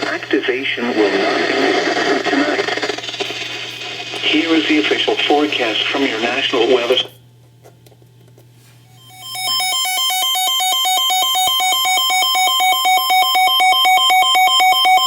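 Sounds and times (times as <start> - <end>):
electronic ringtone: 9.0 - 15.0.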